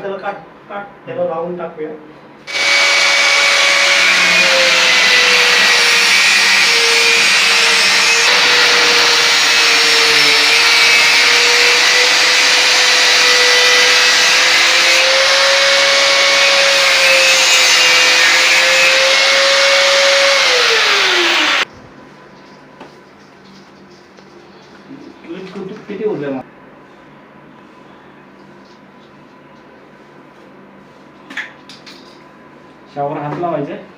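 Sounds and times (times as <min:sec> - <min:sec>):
power tool motor whine: 0:02.5 - 0:21.7.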